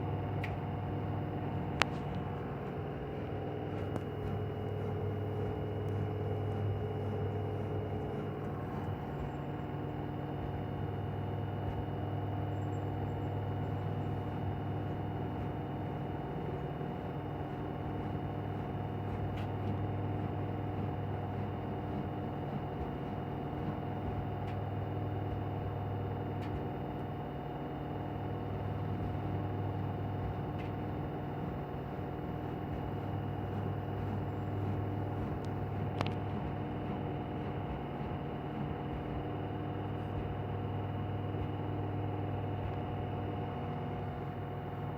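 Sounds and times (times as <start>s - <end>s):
washing machine spinning: 0.0s - 44.9s.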